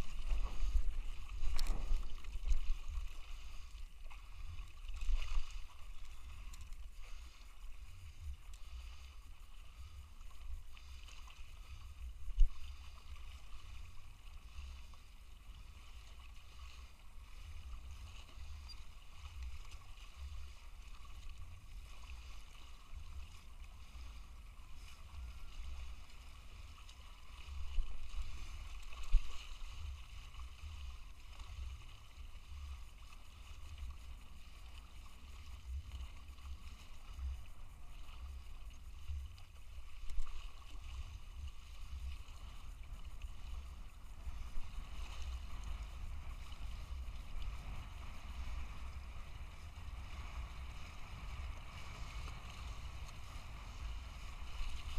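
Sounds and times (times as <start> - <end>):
faint water sounds: 0.0 - 54.9.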